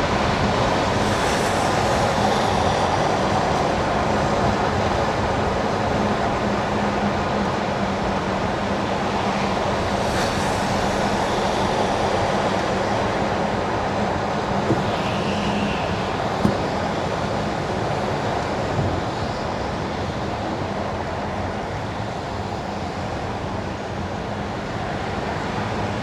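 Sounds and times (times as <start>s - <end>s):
tyres hissing on wet asphalt: 0.0s - 4.1s, 8.9s - 17.5s
low hum: 8.3s - 17.5s.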